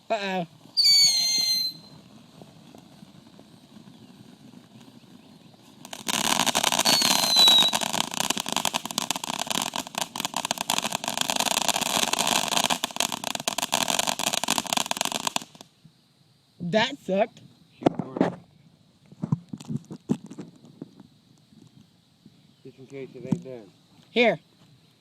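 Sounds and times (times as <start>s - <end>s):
firework hissing crackle: 0.0s - 17.7s, 18.6s - 25.0s
falling whistle: 0.8s - 2.0s, 6.8s - 7.8s.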